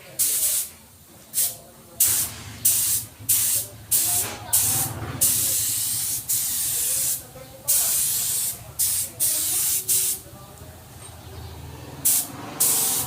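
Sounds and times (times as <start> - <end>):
spray gun hissing: 1.4 - 10.2, 12.0 - 13.0.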